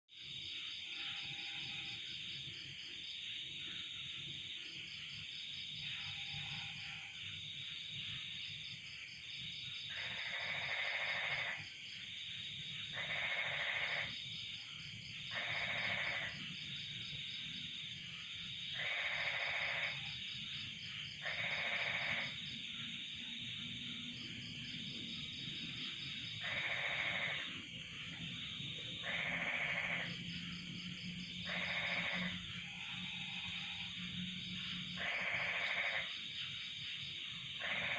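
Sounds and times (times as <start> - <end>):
crickets trilling: 0.1 - 37.9
frog calling loudly: 9.9 - 11.7, 12.9 - 14.1, 15.3 - 16.5, 18.7 - 20.2, 21.2 - 22.5, 26.0 - 27.7, 28.7 - 37.9.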